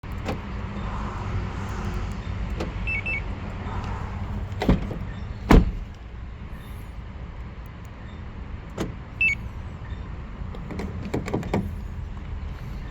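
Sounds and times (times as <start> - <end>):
car engine rumbling: 0.0 - 12.9
two-tone electronic beep: 2.8 - 3.3, 9.2 - 9.4
loud clunks: 4.6 - 6.0.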